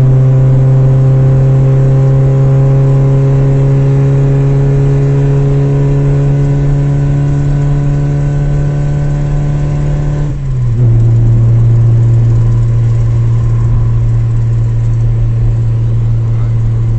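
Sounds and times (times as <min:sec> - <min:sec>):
car engine humming: 0:00.0 - 0:16.9.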